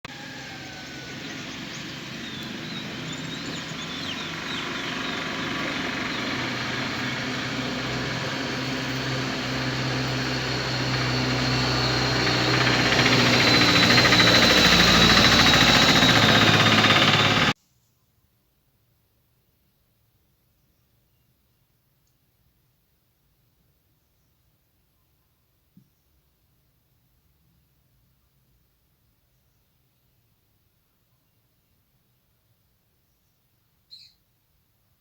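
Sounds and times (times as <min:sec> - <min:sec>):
motor hum: 0:00.1 - 0:17.6
faint bird chirps: 0:33.0 - 0:34.4.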